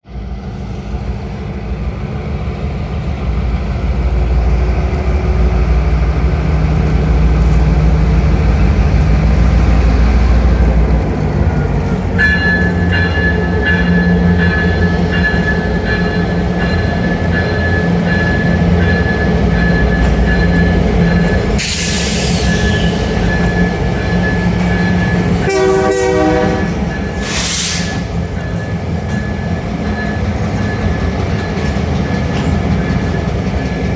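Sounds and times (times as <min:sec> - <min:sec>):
diesel locomotive rumble: 0:00.0 - 0:33.9
train wheels squealing and clicking: 0:11.0 - 0:25.7, 0:26.6 - 0:33.9.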